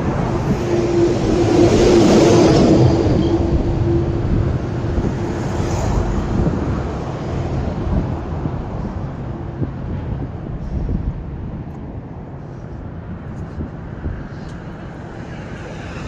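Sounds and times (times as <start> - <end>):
vehicle passing: 0.0 - 9.7
wind on microphone: 0.0 - 16.0.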